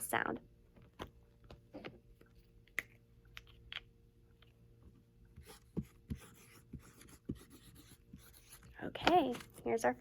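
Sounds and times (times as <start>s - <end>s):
pen scratching while writing: 5.4s - 8.7s.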